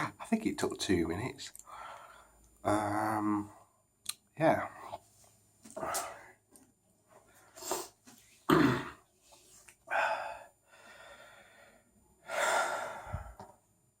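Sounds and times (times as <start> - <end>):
man breathing hard: 1.6 - 2.4, 9.9 - 13.6.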